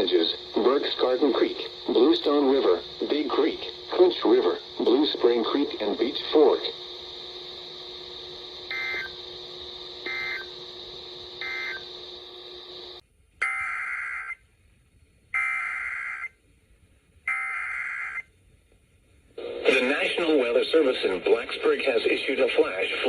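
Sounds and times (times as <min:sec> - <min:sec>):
steady electronic hum: 0:00.0 - 0:23.0
two-tone warbling data bursts: 0:13.4 - 0:14.4, 0:15.4 - 0:16.3, 0:17.3 - 0:18.2.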